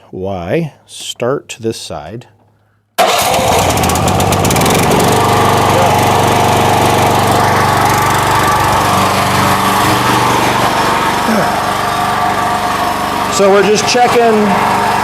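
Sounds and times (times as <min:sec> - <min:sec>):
backhoe engine running: 0:03.0 - 0:15.0.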